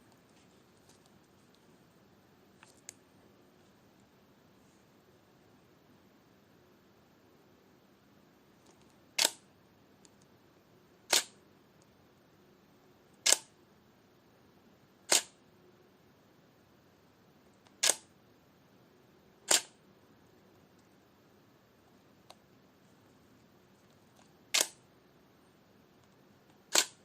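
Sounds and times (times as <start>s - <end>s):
faint steady hiss: 0.0s - 27.0s
camera shutter clicks: 9.2s - 9.4s, 11.1s - 11.4s, 13.2s - 13.5s, 15.1s - 15.4s, 17.8s - 18.1s, 19.5s - 19.8s, 24.5s - 24.8s, 26.7s - 27.0s.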